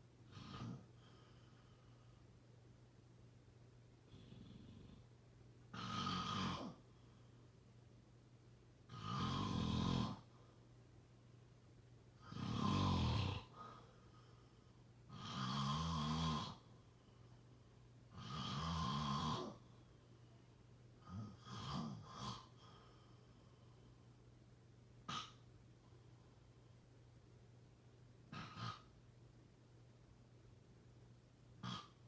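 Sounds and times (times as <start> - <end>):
person snoring: 0.3 - 1.0, 5.7 - 6.8, 8.9 - 10.3, 12.2 - 13.8, 15.1 - 16.6, 18.1 - 19.6, 21.0 - 22.7, 31.6 - 32.0.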